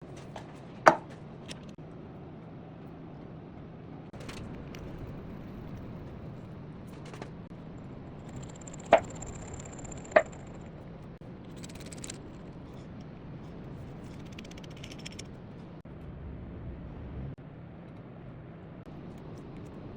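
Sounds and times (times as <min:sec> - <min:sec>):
sharp knocks: 0:00.9 - 0:01.1.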